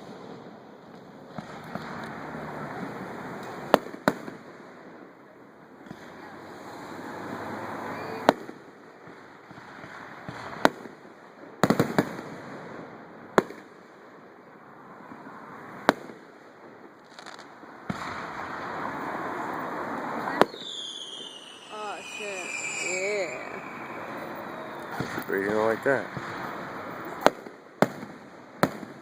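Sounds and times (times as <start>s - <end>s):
firework shells bursting: 17.0s - 18.9s, 20.4s - 29.0s
firework crackling hiss: 17.0s - 29.0s.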